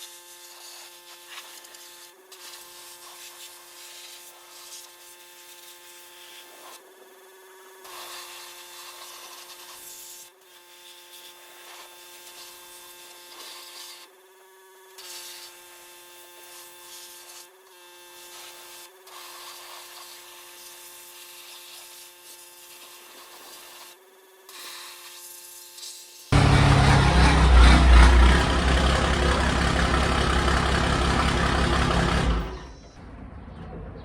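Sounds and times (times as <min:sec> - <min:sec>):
shop vac whining: 0:26.3 - 0:33.0.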